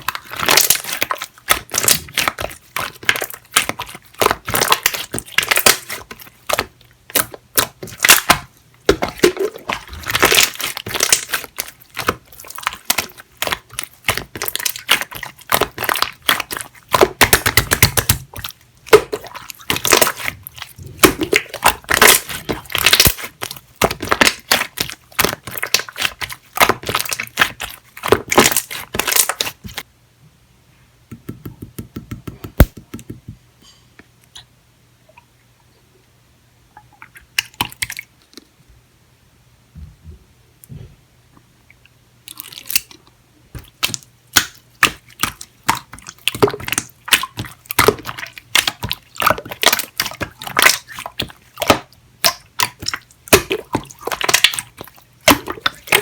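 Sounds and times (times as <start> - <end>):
slime crackling pops: 32.6 - 32.8, 51.6 - 56.0.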